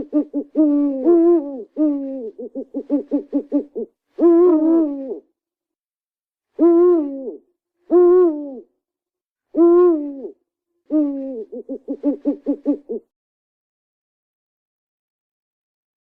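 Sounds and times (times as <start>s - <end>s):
owl hooting: 0.0s - 5.3s, 6.6s - 8.7s, 9.5s - 13.0s.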